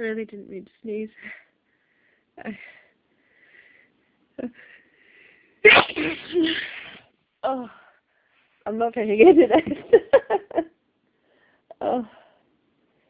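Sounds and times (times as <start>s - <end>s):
person sneezing loudly: 5.6s - 7.1s.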